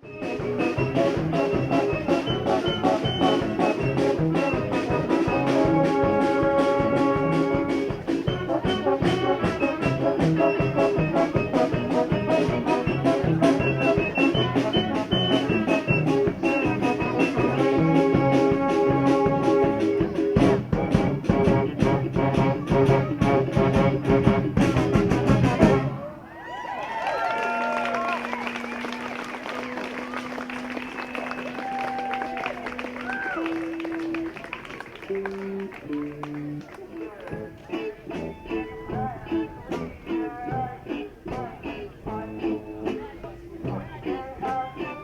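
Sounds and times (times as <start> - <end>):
bass line: 0.0 - 26.1, 37.3 - 45.0
horn notes: 0.0 - 26.2, 27.4 - 45.0.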